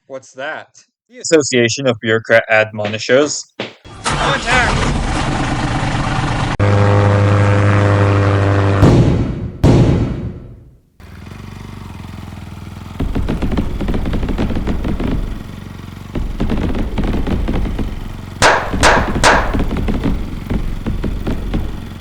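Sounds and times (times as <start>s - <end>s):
sharp bangs: 3.6s - 4.2s, 8.4s - 10.8s, 13.0s - 22.0s
ultralight aircraft engine revving: 3.9s - 8.9s, 11.0s - 22.0s.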